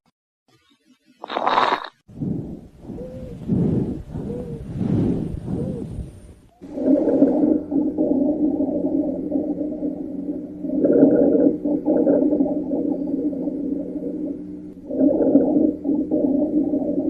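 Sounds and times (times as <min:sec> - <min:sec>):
wheezing lung sounds: 0:01.6 - 0:07.4.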